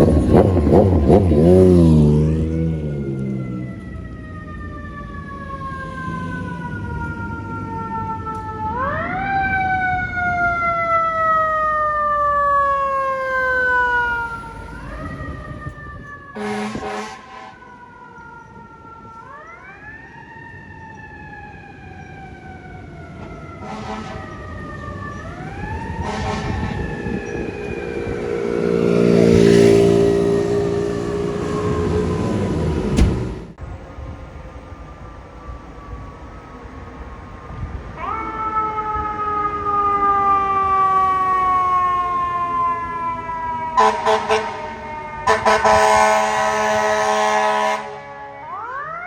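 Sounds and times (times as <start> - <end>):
fire engine siren wailing: 0.0 - 49.0
air horn blasts: 16.4 - 17.7, 23.6 - 24.4, 26.0 - 30.8, 43.8 - 48.3.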